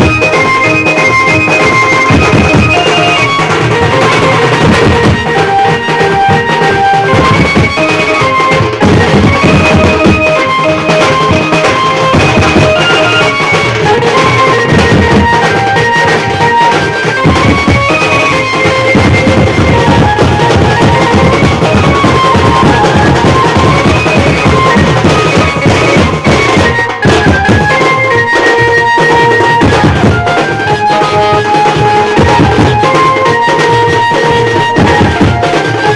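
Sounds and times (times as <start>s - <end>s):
folk band playing: 0.0s - 35.9s
dense drumming: 2.0s - 28.9s.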